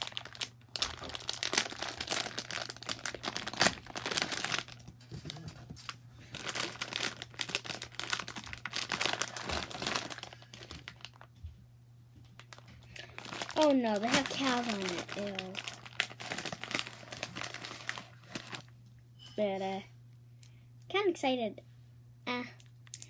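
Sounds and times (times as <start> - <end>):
plastic packaging crinkling: 0.0 - 11.4, 12.3 - 18.8.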